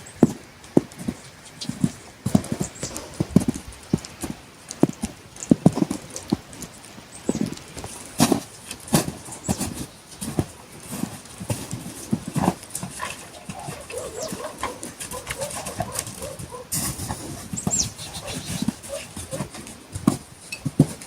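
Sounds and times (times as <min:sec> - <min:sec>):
animal hooves knocking: 0:00.0 - 0:21.0
wavering animal calls: 0:12.9 - 0:19.6
high falling chirp: 0:17.6 - 0:19.0.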